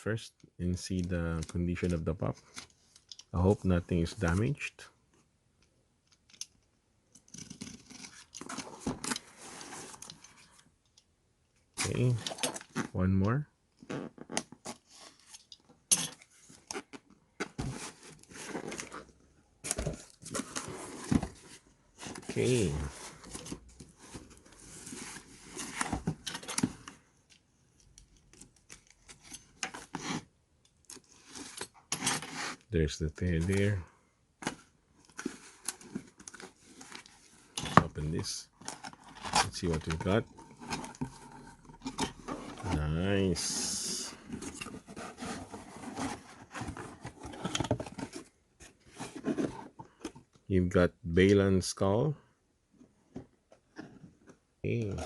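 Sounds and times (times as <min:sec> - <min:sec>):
cardboard packaging rustling: 0:16.3 - 0:27.0, 0:34.4 - 0:50.3.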